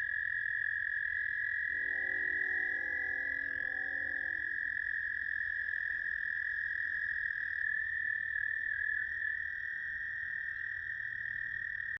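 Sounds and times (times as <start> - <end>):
toads trilling: 0.0 - 7.7.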